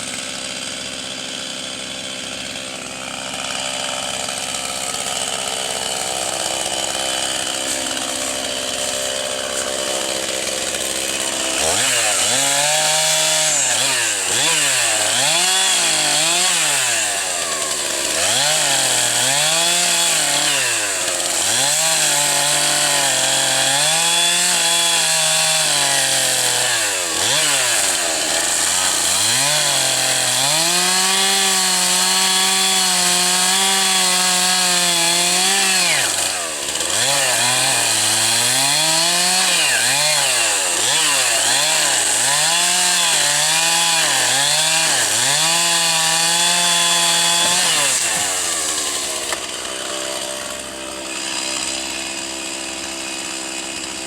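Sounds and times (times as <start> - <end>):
chainsaw engine running: 0.0 - 54.0.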